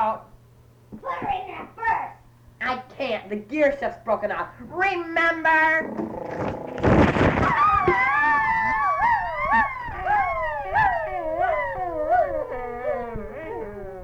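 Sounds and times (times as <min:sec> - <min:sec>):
wavering howl-like wail: 0:06.3 - 0:14.0.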